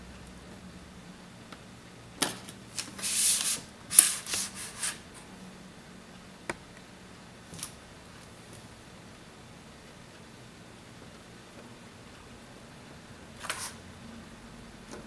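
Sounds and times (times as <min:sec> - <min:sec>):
tools scraping and rubbing: 0:02.7 - 0:05.0.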